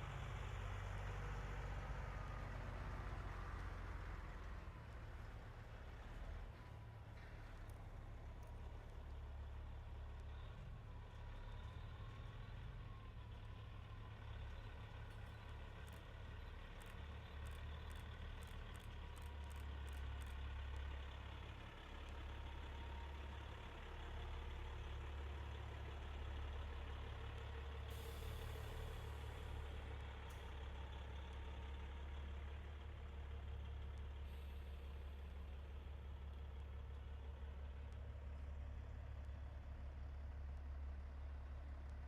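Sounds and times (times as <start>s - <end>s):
truck diesel engines rumbling: 0.0s - 42.0s.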